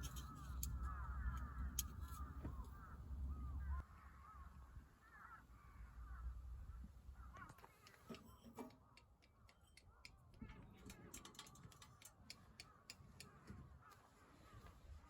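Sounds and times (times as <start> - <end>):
low wind rumble: 0.0 - 7.3
birds calling: 0.0 - 15.0.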